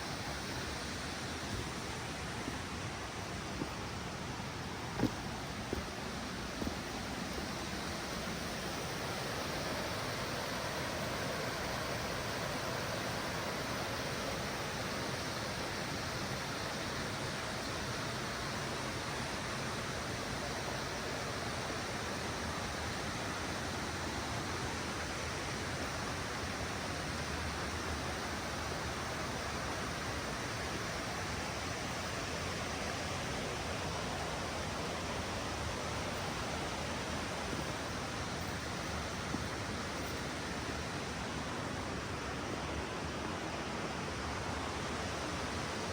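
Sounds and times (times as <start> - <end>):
rushing water: 0.0 - 45.9.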